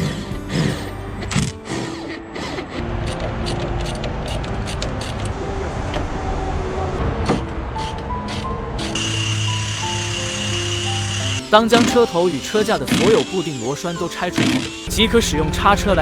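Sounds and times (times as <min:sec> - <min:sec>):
steady low rumble: 0:14.9 - 0:16.0.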